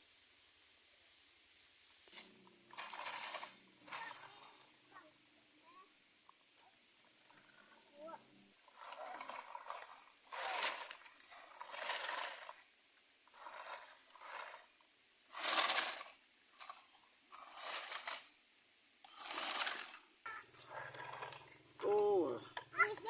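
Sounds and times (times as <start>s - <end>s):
gravel crunching and scraping: 8.7s - 12.6s.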